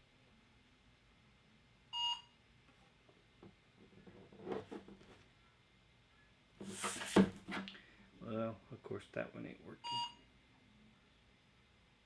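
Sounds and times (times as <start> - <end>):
faint handling noise: 6.6 - 7.7.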